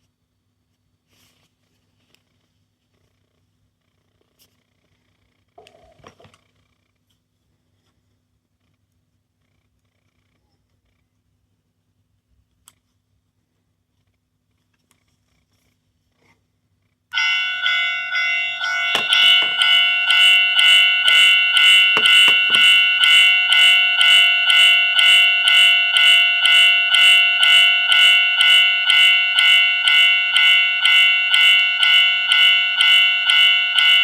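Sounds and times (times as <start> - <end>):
toy speaker alarm bell ringing: 17.1 - 34.0.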